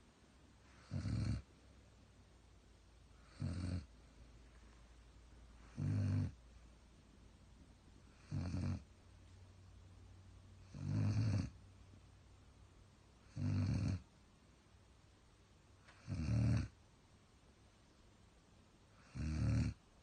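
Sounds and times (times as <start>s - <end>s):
dog snoring: 0.7s - 1.5s, 3.2s - 3.9s, 5.6s - 6.4s, 8.1s - 8.9s, 10.6s - 11.6s, 13.2s - 14.1s, 15.8s - 16.8s, 18.9s - 19.8s.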